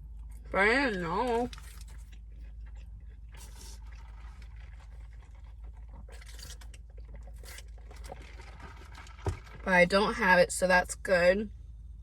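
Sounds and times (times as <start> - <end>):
steady low hum: 0.0 - 12.0
food crunching: 0.1 - 9.7
person chewing food: 1.3 - 9.6.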